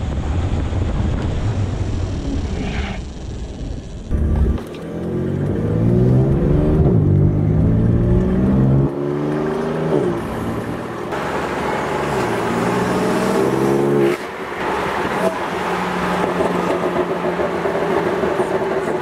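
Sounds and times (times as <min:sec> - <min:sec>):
engine accelerating and slowing: 0:03.9 - 0:19.0.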